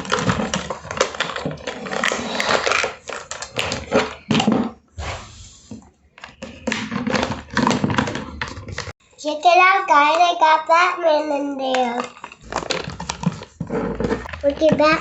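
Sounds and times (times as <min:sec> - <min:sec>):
plastic toy parts scraping and clicking: 0:00.0 - 0:04.6, 0:11.7 - 0:15.0.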